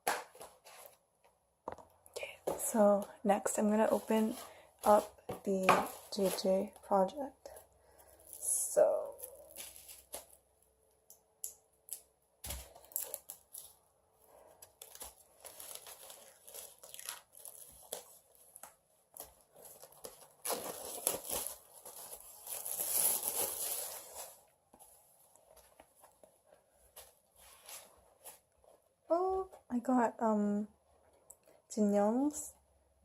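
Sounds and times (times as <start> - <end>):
plastic wrapping tearing and crinkling: 8.2 - 10.6, 11.8 - 13.8, 14.6 - 24.4.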